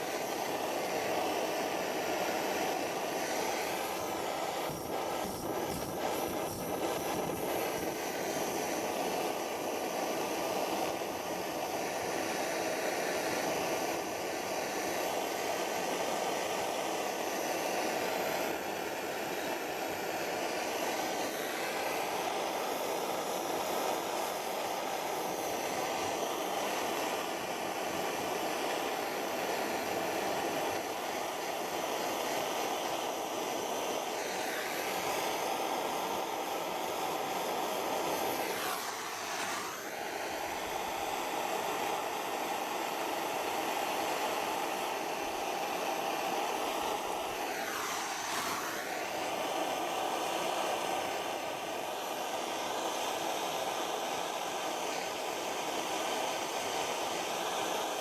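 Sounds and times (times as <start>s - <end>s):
blow lamp flame hissing: 0.0s - 58.0s.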